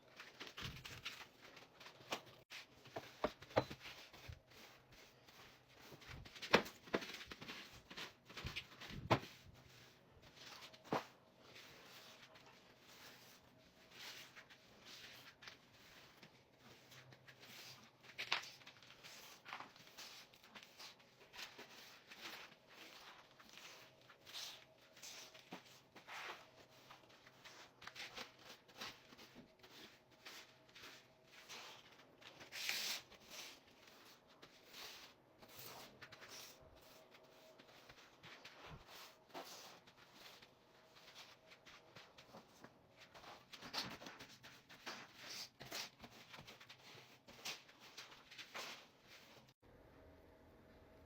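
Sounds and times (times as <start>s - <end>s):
rustling and scraping of objects: 0.0s - 49.6s
faint room hum: 0.0s - 51.0s
low steady hum: 49.6s - 51.0s.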